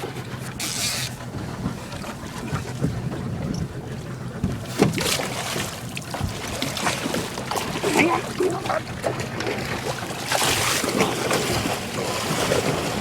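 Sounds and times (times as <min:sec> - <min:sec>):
boat motor humming: 0:00.0 - 0:13.0
wind buffeting microphone: 0:01.2 - 0:04.7.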